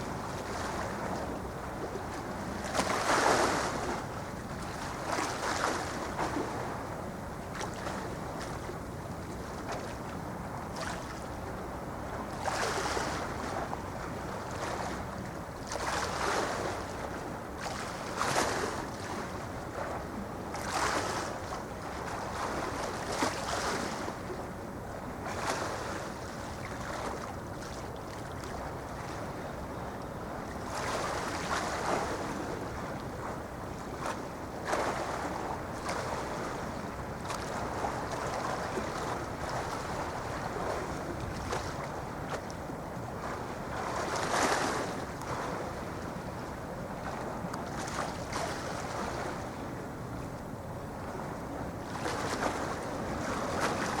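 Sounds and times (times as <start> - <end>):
sea waves washing in: 0.0 - 8.6, 30.3 - 54.0
wind rumble on microphone: 0.0 - 54.0.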